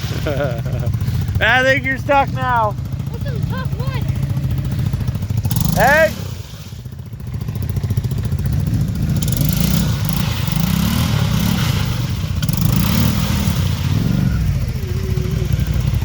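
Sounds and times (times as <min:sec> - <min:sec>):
off-road vehicle engine revving: 0:00.0 - 0:16.0.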